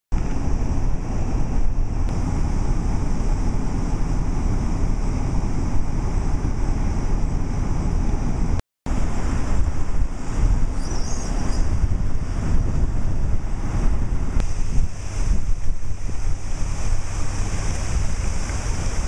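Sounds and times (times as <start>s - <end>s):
wind buffeting microphone: 0.1s - 19.0s.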